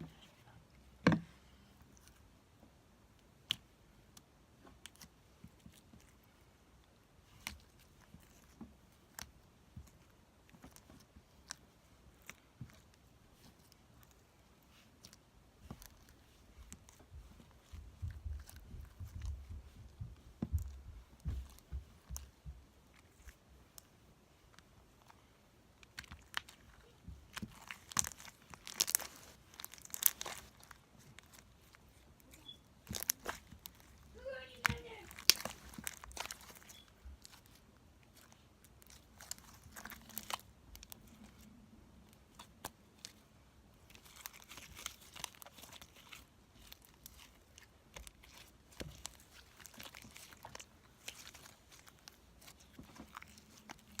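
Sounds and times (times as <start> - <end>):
slime squished by hand: 7.1 - 54.0
crackling clicks and pops: 25.8 - 41.1.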